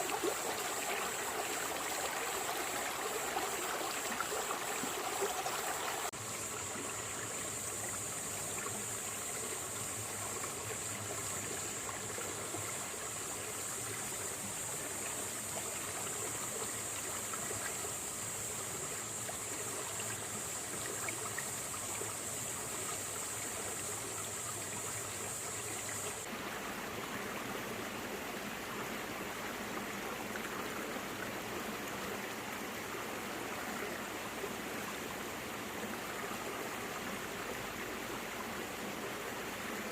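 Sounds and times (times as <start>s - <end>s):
steady high hiss: 0.0s - 27.9s
stream trickling over rocks: 0.0s - 39.9s.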